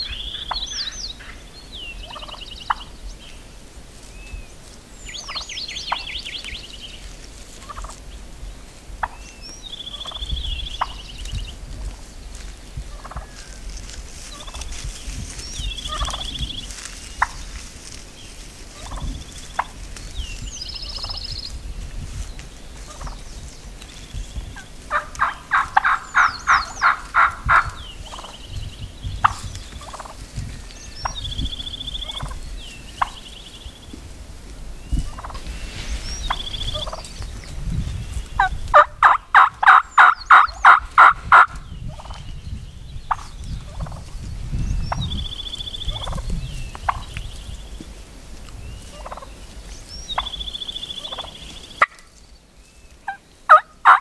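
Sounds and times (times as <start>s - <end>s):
wild turkey gobbling: 0.0s - 3.0s, 3.9s - 8.2s, 9.0s - 9.2s, 9.8s - 11.0s, 12.9s - 14.9s, 15.9s - 20.0s, 20.8s - 21.2s, 22.8s - 23.3s, 24.8s - 28.4s, 29.2s - 30.3s, 31.8s - 33.3s, 35.0s - 35.6s, 36.3s - 37.2s, 38.4s - 42.2s, 45.9s - 47.2s, 48.8s - 49.5s, 50.1s - 52.0s, 53.0s - 54.0s
small songbirds chirping: 0.0s - 54.0s.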